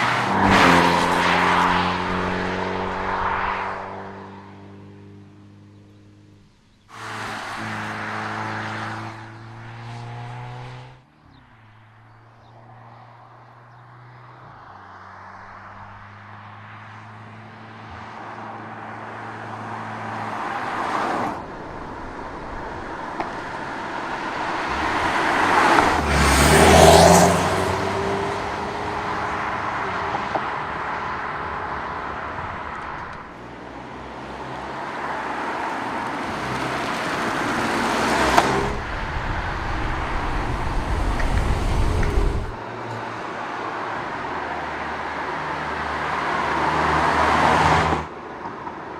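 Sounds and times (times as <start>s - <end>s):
car passing by: 0.0s - 5.2s, 7.0s - 11.0s, 17.7s - 30.7s, 34.2s - 48.1s
tyre and road noise: 0.0s - 48.9s.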